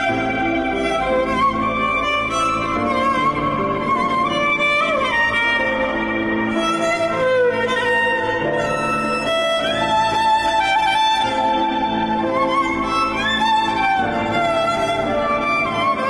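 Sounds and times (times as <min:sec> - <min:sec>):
sliding melody: 0:00.0 - 0:16.0.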